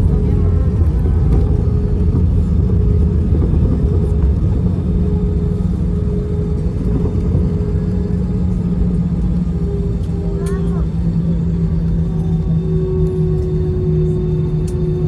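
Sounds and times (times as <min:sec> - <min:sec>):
airliner cabin engine rumble: 0:00.0 - 0:15.0
constant hum: 0:00.0 - 0:15.0.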